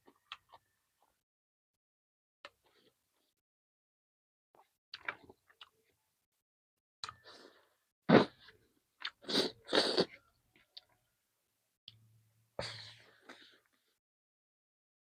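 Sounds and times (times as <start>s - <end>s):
mouth eating and chewing: 0.0s - 0.7s, 7.0s - 11.0s.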